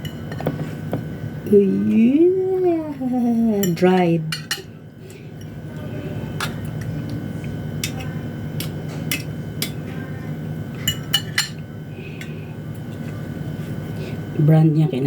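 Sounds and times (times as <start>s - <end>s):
steady low hum: 0.0s - 15.0s
cutlery clinking on dishware: 7.8s - 9.8s, 10.8s - 11.6s.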